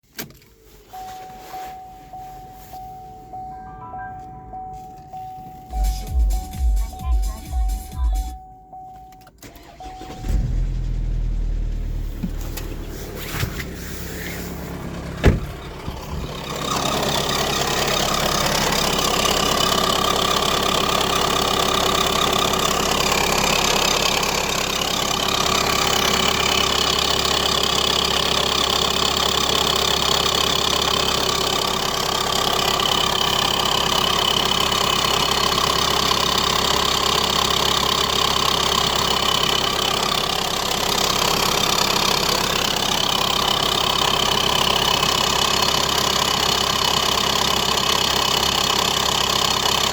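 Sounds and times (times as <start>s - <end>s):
diesel engine starting and idling: 0.1s - 49.9s.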